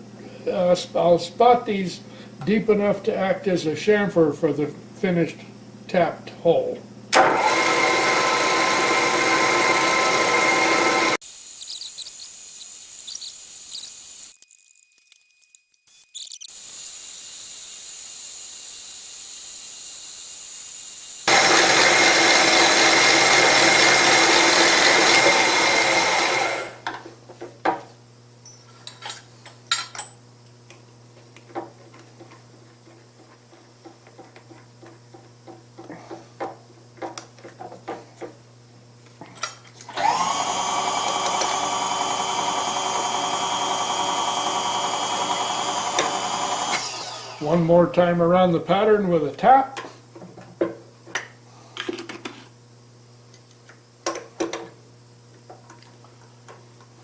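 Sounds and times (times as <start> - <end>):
milling machine drilling metal: 39.9 - 47.6.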